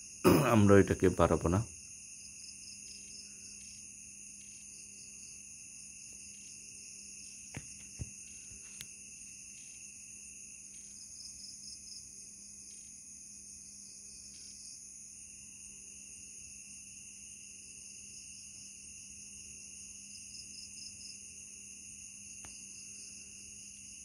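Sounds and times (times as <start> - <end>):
night insects trilling: 0.0 - 24.0.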